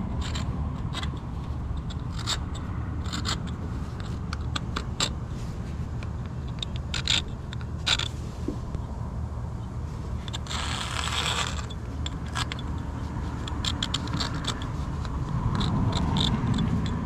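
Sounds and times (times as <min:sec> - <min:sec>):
low steady hum: 0:00.0 - 0:17.0
hand scraper scraping metal: 0:10.2 - 0:17.0.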